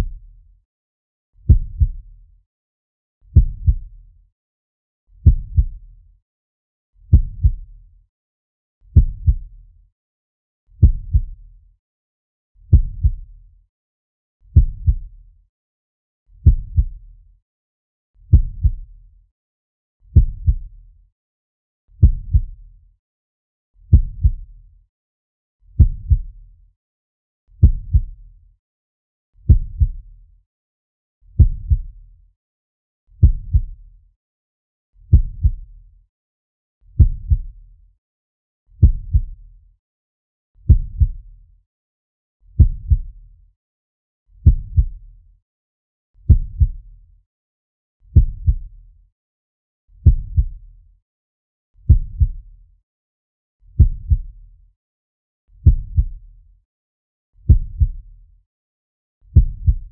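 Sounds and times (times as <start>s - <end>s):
slow heartbeat thumps: 1.5s - 2.0s, 3.4s - 3.9s, 5.2s - 5.8s, 7.1s - 7.6s, 9.0s - 9.5s, 10.8s - 11.4s, 12.7s - 13.2s, 14.6s - 15.1s, 16.4s - 17.0s, 18.3s - 18.8s, 20.2s - 20.7s, 22.0s - 22.6s, 23.9s - 24.4s, 25.8s - 26.3s, 27.6s - 28.2s, 29.5s - 30.0s, 31.4s - 31.9s, 33.2s - 33.8s, 35.1s - 35.6s, 37.0s - 37.5s, 38.8s - 39.4s, 40.7s - 41.2s, 42.6s - 43.1s, 44.4s - 45.0s, 46.3s - 46.8s, 48.2s - 48.7s, 50.0s - 50.6s, 51.9s - 52.4s, 53.8s - 54.3s, 55.6s - 56.1s, 57.5s - 58.0s, 59.4s - 59.9s.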